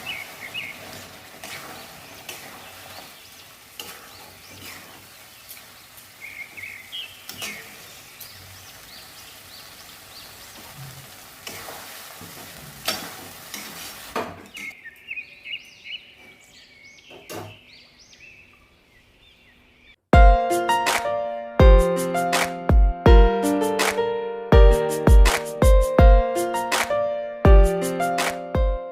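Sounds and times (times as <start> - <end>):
food sizzling in a pan: 0.0 - 14.3
spoon scraping a pan: 3.7 - 5.0
music: 20.1 - 28.9.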